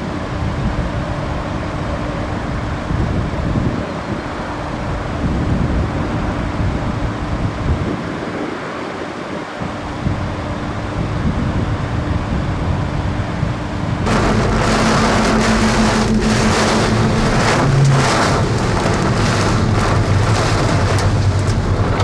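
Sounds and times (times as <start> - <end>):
wind buffeting microphone: 14.0 - 22.0
low mechanical hum: 14.1 - 22.0.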